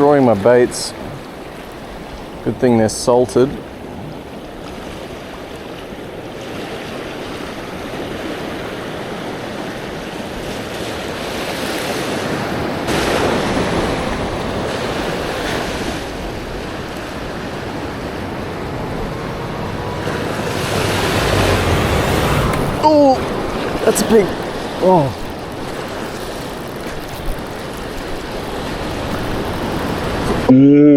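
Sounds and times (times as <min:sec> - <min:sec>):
ocean swell washing over rocks: 0:12.9 - 0:30.4.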